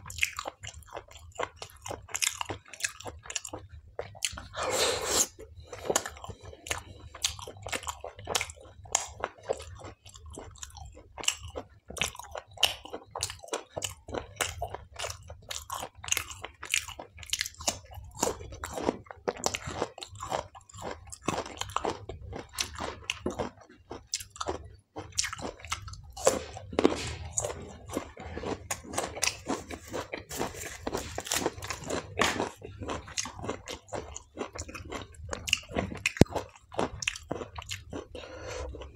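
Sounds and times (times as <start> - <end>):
chewing and crunching: 0.0 - 38.9.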